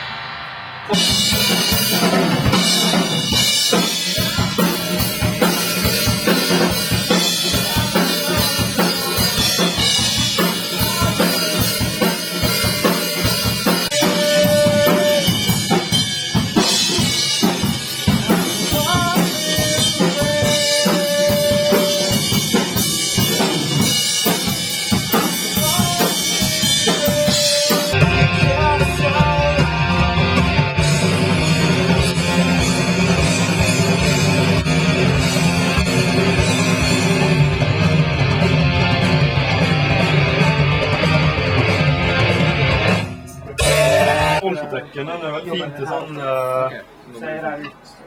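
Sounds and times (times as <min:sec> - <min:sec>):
bass guitar: 0:00.0 - 0:44.4
drum kit steady beat: 0:00.0 - 0:44.4
electric guitar notes: 0:00.0 - 0:44.4.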